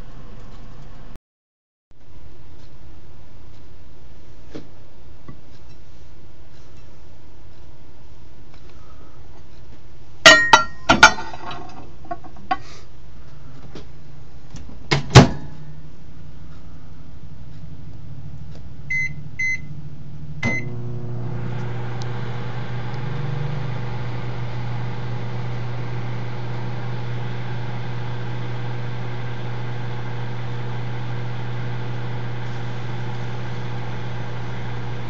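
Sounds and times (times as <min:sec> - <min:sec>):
microwave oven humming: 0:17.2 - 0:35.0
microwave keypad beeps: 0:18.9 - 0:19.7, 0:20.4 - 0:20.7.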